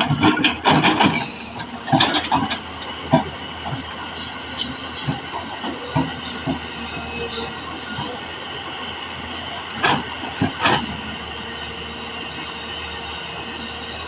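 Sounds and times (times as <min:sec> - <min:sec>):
sharp metallic knocks: 0:00.0 - 0:03.8
excavator hum with whine: 0:00.0 - 0:14.0.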